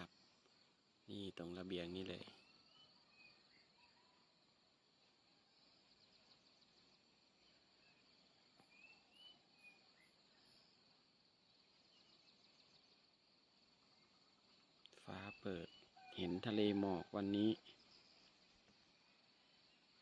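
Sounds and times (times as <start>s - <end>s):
faint bird chirps: 0.0s - 20.0s
high insect drone: 0.0s - 20.0s.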